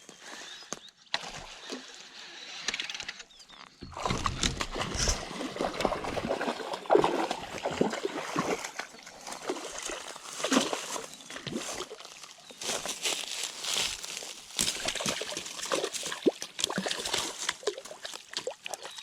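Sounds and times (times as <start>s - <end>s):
fish splashing in water: 4.0s - 12.0s, 14.3s - 19.0s.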